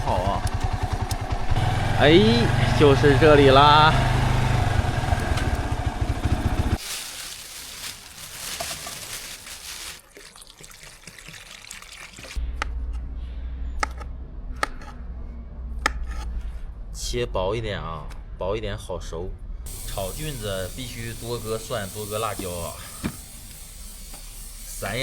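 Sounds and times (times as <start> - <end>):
motorcycle engine running: 0.0 - 6.8
trickling water-like hiss: 7.2 - 12.4, 19.7 - 25.0.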